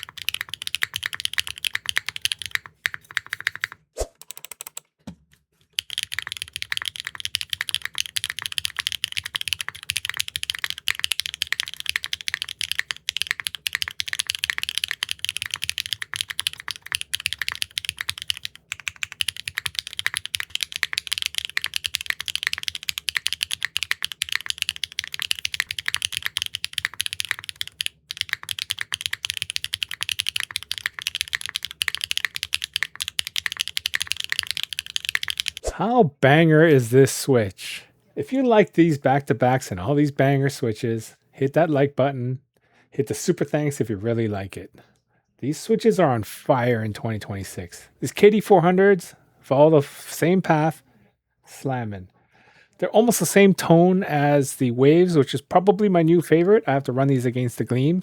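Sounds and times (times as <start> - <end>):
fast mechanical keyboard typing: 0.0 - 4.8, 5.8 - 35.7.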